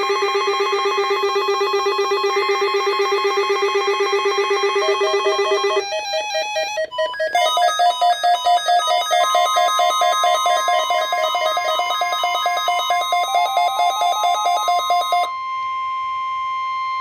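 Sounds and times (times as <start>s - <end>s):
electronic beeping melody: 0.0s - 15.6s.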